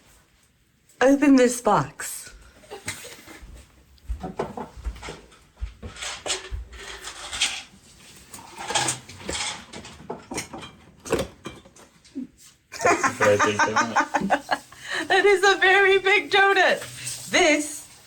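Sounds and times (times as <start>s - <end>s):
person laughing: 12.8s - 15.3s.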